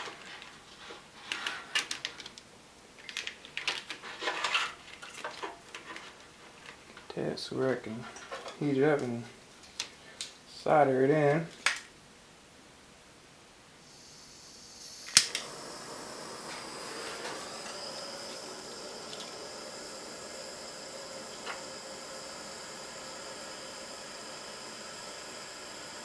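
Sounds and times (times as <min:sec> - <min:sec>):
gas torch hissing: 0:13.8 - 0:26.0
igniter click: 0:14.8 - 0:26.0.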